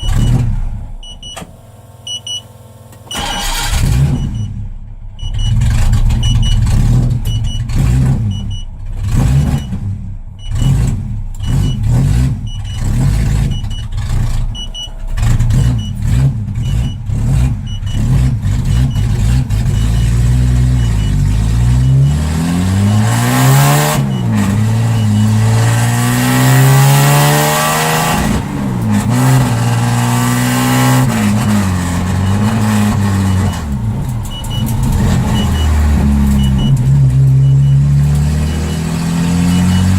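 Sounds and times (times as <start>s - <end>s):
loud car engine accelerating: 0.0s - 1.1s, 3.1s - 39.9s.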